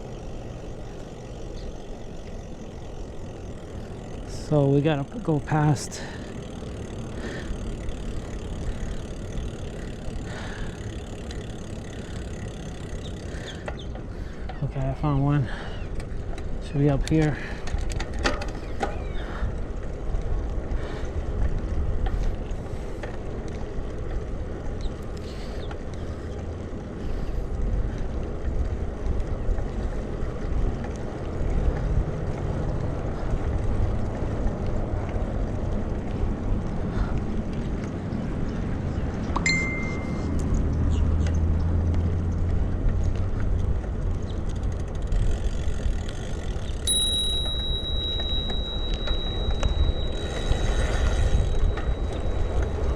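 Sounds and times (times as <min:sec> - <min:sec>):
road rumble: 0:00.0 - 0:52.9
thin high steady tone: 0:39.4 - 0:40.4, 0:46.8 - 0:52.9.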